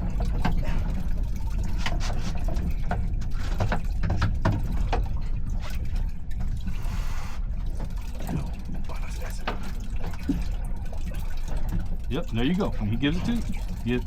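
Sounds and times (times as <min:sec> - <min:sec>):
water slapping against boat hull: 0:00.0 - 0:14.0.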